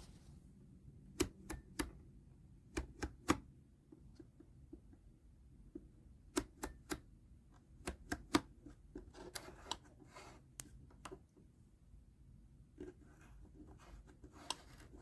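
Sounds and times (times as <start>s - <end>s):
plastic heater control clicks: 1.1s - 2.0s, 2.7s - 3.4s, 6.3s - 7.1s, 7.8s - 8.5s.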